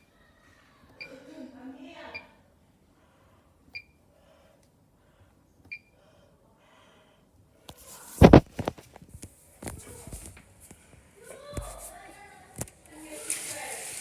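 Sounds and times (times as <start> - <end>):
knocks and rustling: 7.7 - 10.4.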